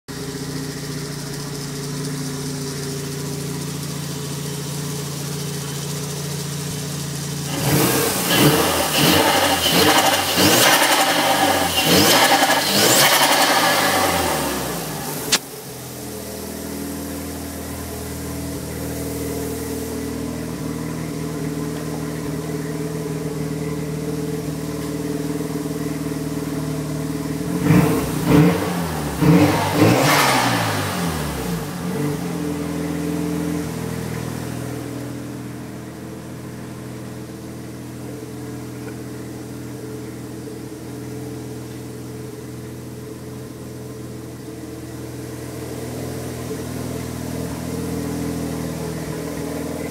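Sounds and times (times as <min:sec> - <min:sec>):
turbo compressor surge flutter: 0:00.1 - 0:37.2
rotary engine idling and revving: 0:00.1 - 0:49.9.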